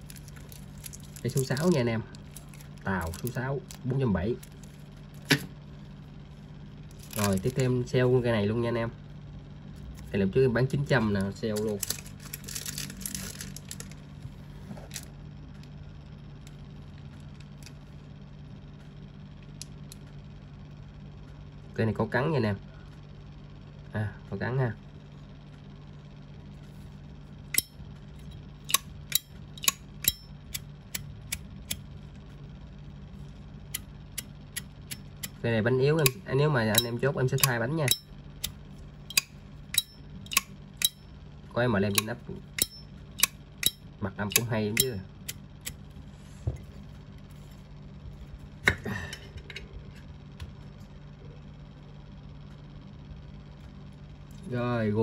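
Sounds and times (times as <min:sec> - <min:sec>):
steady low hum: 0:00.0 - 0:55.0.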